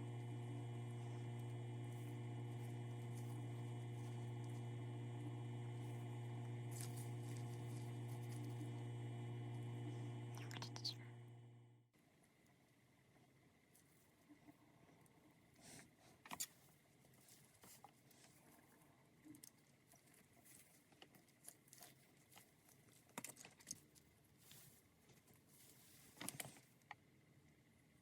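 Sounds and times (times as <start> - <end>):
faint steady hum: 0.0 - 20.3.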